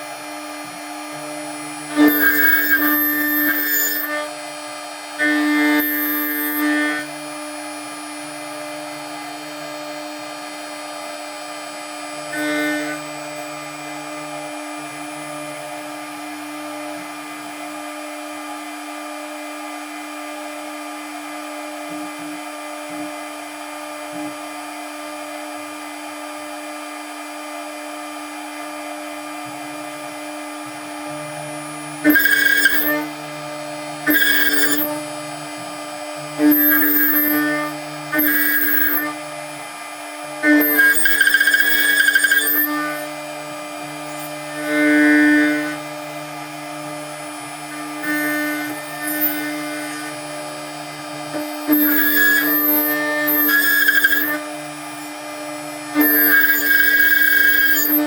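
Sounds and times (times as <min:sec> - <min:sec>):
cutter milling steel: 0:00.0 - 0:21.4, 0:27.8 - 0:58.0
milling spindle whine: 0:00.1 - 0:16.0, 0:30.1 - 0:58.0.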